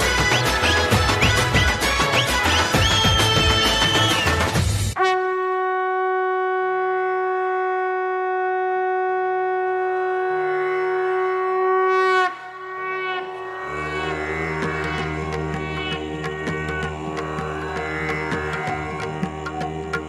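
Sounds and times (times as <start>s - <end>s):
tabla and sitar music: 0.0s - 5.0s, 13.2s - 20.0s
horn-like blown note: 5.0s - 19.7s.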